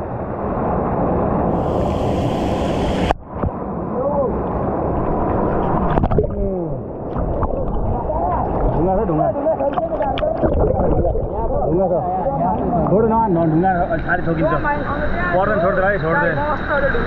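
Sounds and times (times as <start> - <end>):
stream water flowing: 1.5 - 17.0.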